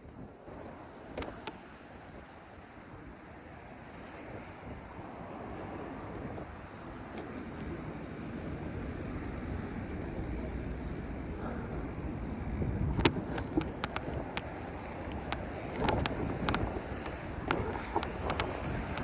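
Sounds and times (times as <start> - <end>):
sharp irregular clicks and knocks: 1.2 - 1.6, 13.0 - 19.0
wind buffeting microphone: 4.2 - 19.0.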